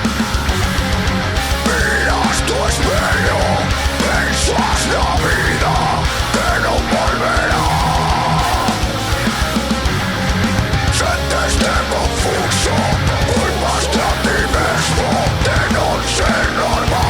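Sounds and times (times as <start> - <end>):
heavy rock band: 0.0 - 17.0
singer's voice sliding in pitch: 1.6 - 9.0, 10.9 - 17.0.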